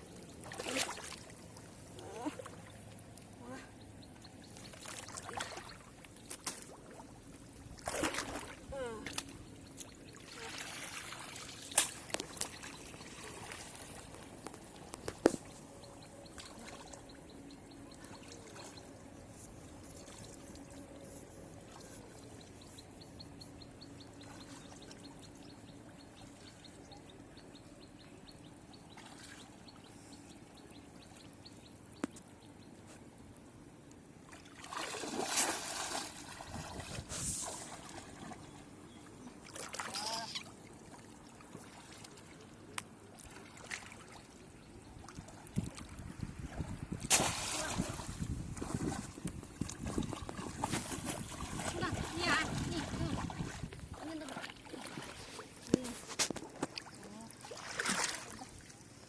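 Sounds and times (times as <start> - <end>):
shallow water trickling and sloshing: 0.0 - 59.0
water splashing: 0.3 - 3.4, 4.6 - 7.1, 7.8 - 15.4, 34.3 - 38.5, 39.4 - 42.5, 47.0 - 58.8.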